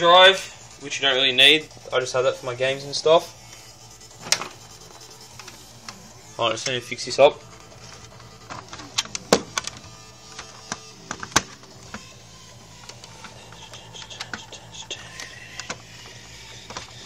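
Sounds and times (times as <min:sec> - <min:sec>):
plastic parts clicking and knocking: 0:07.7 - 0:12.1, 0:12.8 - 0:17.0.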